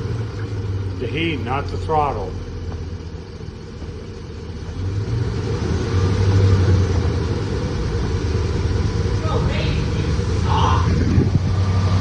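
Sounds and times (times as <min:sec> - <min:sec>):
engine revving: 0:03.8 - 0:12.0.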